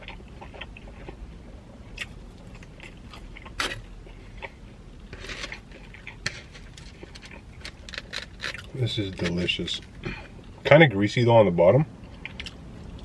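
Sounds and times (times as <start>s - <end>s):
chewing pizza: 0.0s - 10.7s, 12.0s - 13.0s
crust crunching: 1.9s - 10.7s.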